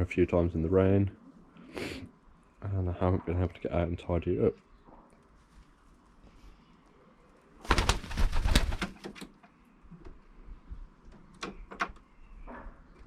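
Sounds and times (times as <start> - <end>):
pigeon wings flapping: 7.6 - 9.3.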